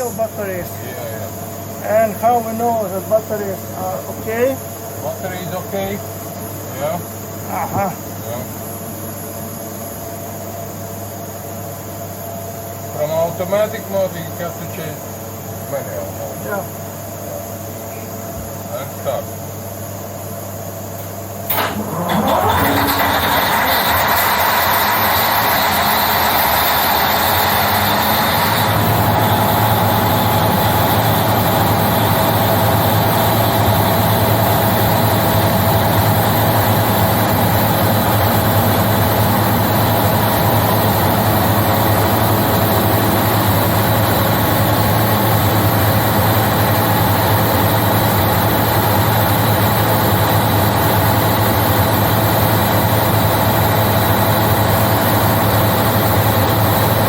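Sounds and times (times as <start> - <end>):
diesel generator engine running: 21.5 - 57.0.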